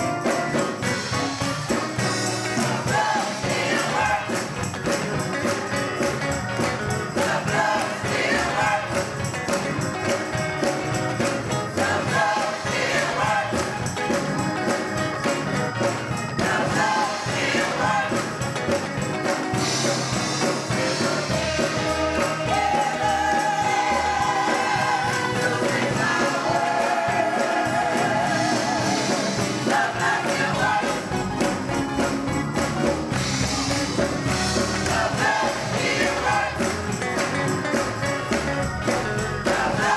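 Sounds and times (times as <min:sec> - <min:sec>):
gospel choir with band: 0:00.0 - 0:39.9.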